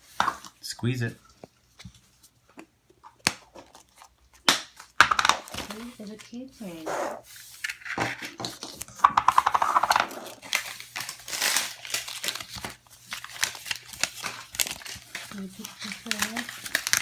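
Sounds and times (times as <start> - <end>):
packaging crinkling and tearing: 8.2 - 17.0
rapid ripping: 10.1 - 17.0.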